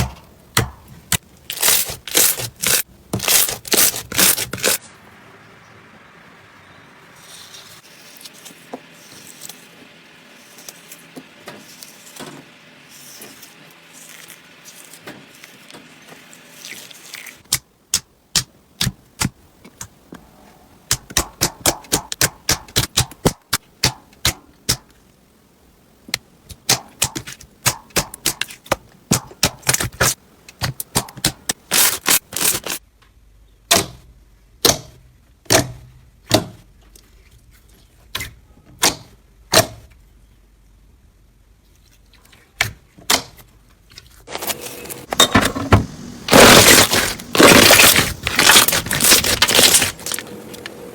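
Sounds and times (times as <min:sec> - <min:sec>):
slime crackling: 0:01.5 - 0:04.8, 0:26.7 - 0:32.8, 0:46.3 - 0:50.3.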